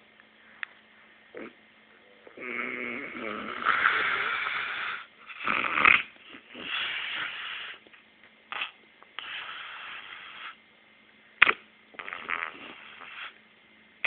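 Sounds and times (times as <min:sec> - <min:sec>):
man snoring: 0:02.3 - 0:07.3.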